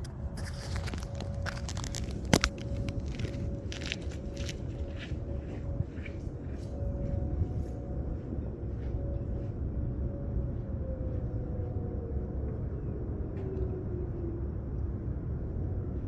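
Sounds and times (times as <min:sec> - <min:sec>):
steady low rumble: 0:00.0 - 0:10.4
distant warning siren: 0:00.1 - 0:14.7.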